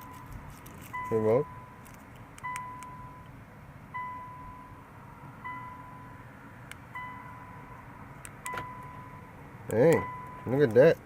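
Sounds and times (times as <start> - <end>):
electronic warning chime: 10.0 - 10.5.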